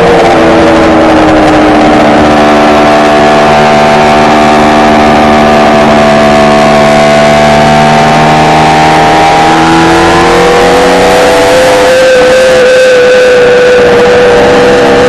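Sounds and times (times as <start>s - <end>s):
two-stroke motorcycle engine: 0.0s - 15.0s.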